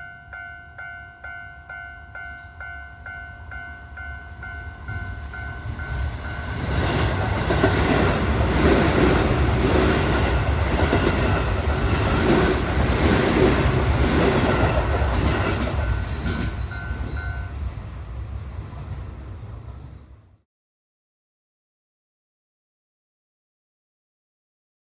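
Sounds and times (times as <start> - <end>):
crossing warning bell dinging: 0.0 - 17.9
train wheels clattering: 5.8 - 17.4.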